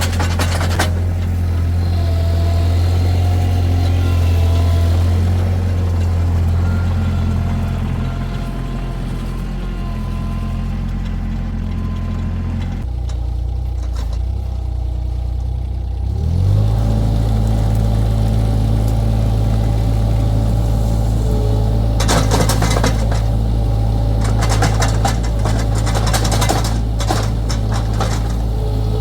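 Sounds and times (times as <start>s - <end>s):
rattling clatter: 0.0s - 2.1s, 3.0s - 14.6s, 20.6s - 29.0s
skid steer engine running: 0.0s - 29.0s.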